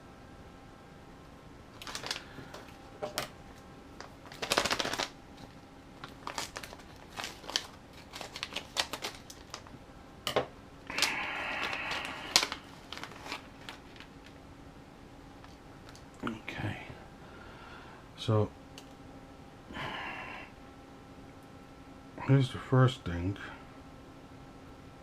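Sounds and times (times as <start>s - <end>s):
rustling or peeling sound: 1.8s - 3.2s, 4.0s - 9.7s, 10.9s - 14.4s.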